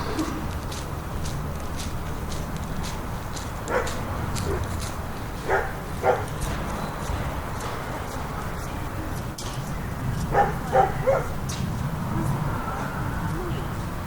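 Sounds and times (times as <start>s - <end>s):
dog barking: 3.7s - 4.7s, 5.4s - 6.4s, 10.3s - 11.4s.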